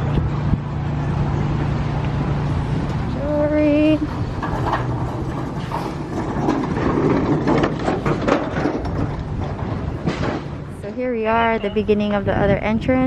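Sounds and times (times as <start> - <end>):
steady low rumble: 0.0 - 13.0
scattered clicks and knocks: 4.1 - 10.7.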